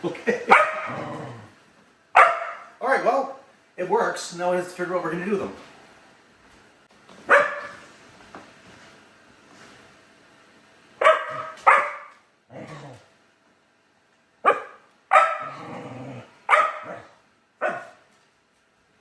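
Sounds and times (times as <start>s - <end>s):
dog barking: 0.5s - 1.0s, 2.2s - 2.8s, 7.3s - 7.9s, 11.0s - 12.2s, 14.4s - 15.7s, 16.5s - 18.0s.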